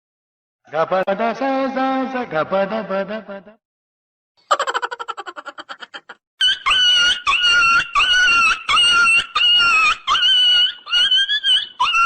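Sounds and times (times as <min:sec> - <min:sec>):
high-pitched squealing cries: 0:04.6 - 0:12.0.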